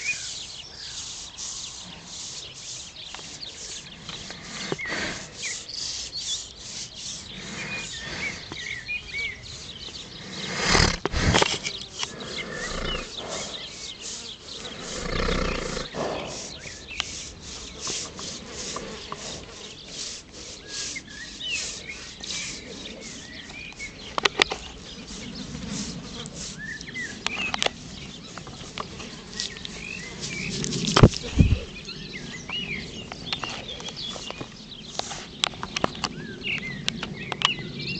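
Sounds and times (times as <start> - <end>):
hand scratching horse's coat: 0.0 - 36.1
horse snorting: 1.7 - 8.8, 9.4 - 23.8.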